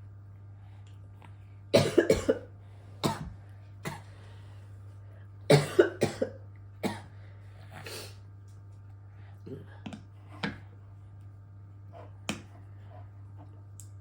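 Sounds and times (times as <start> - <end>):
young child coughing: 1.7 - 4.1, 5.5 - 7.1.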